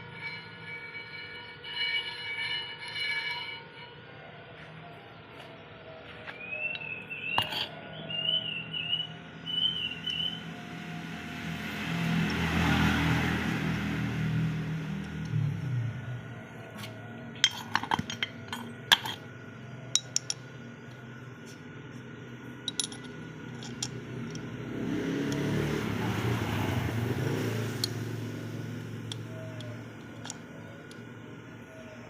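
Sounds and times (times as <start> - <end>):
metal tools clinking: 7.4 - 7.8, 17.4 - 19.3, 19.9 - 20.4, 22.6 - 24.5, 29.0 - 31.0.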